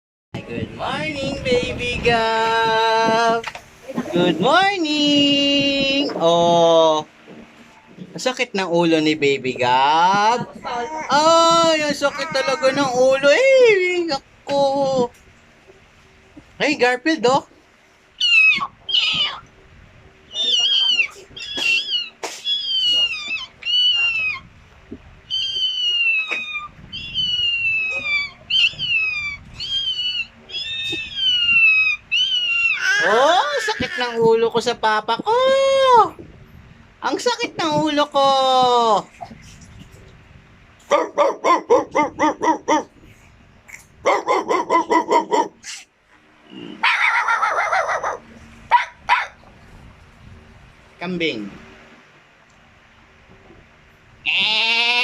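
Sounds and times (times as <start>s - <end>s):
dog whining: 10.4s - 13.4s, 18.2s - 19.5s, 20.3s - 24.5s, 25.3s - 34.0s, 46.5s - 49.4s
dog yipping: 11.8s - 13.3s, 18.2s - 19.4s, 20.3s - 24.5s, 25.3s - 34.0s, 40.9s - 42.9s, 44.0s - 45.8s, 46.8s - 49.4s
kitten meowing: 18.2s - 19.4s, 20.4s - 24.4s, 25.3s - 34.0s
dog barking: 40.9s - 42.9s, 44.0s - 45.6s, 46.8s - 49.4s.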